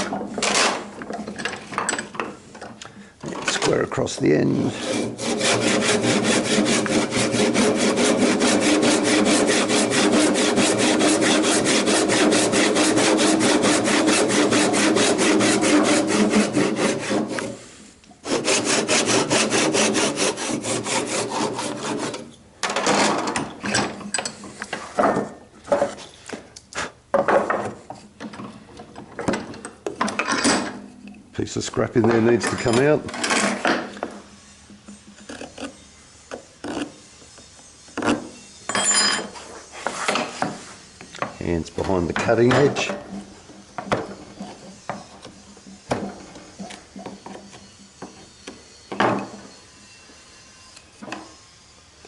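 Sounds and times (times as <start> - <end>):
handsaw cutting wood: 4.4 - 22.3.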